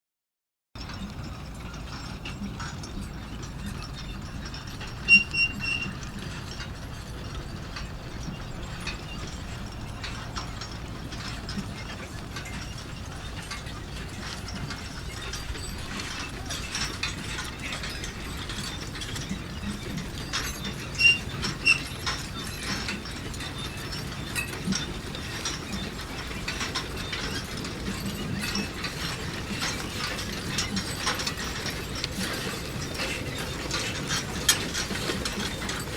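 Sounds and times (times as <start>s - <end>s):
manure spreader rattling: 0.8s - 35.9s
loud squeaks: 5.1s - 6.0s, 20.2s - 22.1s.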